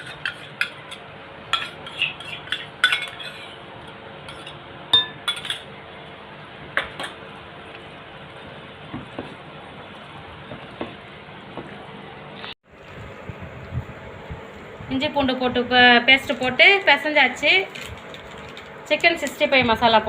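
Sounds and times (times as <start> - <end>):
spoon clinking against a bowl: 0.0 - 3.5, 4.3 - 5.6.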